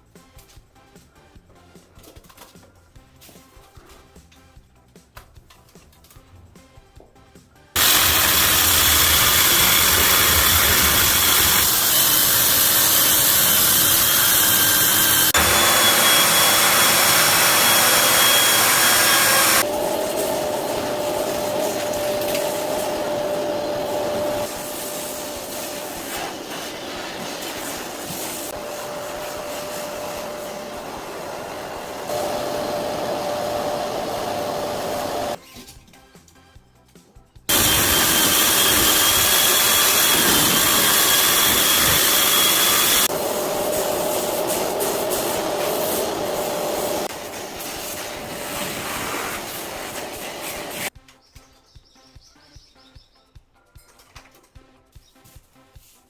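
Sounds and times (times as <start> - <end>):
power tools running: 7.8 - 35.4, 37.5 - 50.9
mid-pitched whine: 13.5 - 35.4.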